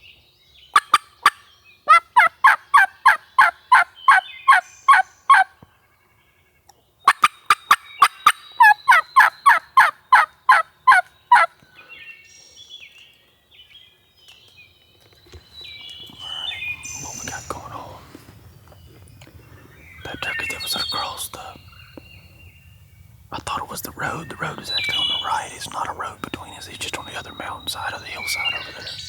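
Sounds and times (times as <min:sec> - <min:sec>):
turkey yelps: 0:00.8 - 0:05.5, 0:07.1 - 0:11.5
faint chirps: 0:15.2 - 0:29.0.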